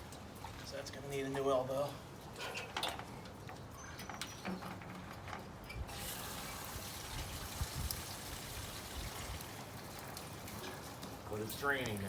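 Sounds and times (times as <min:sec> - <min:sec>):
water rushing through downspout: 0:04.6 - 0:12.0.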